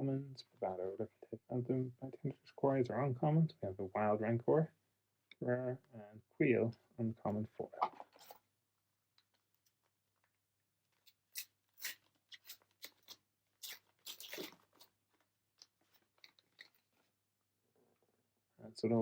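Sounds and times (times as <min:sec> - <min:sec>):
foil wrapper tearing and crinkling: 0:11.0 - 0:15.0.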